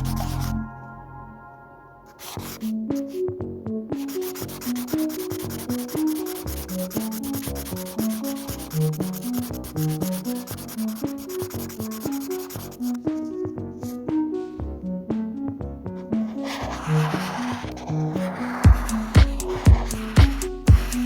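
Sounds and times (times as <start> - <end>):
pencil scratching on paper: 0.0 - 0.6, 2.1 - 3.2, 4.0 - 13.0, 16.3 - 21.0
simple melody background music: 0.0 - 21.0.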